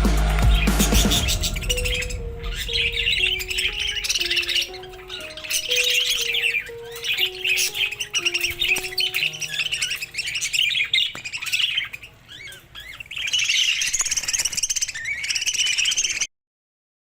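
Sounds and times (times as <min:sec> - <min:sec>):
background music notes: 0:00.0 - 0:11.9
budgerigars chattering: 0:00.5 - 0:16.3.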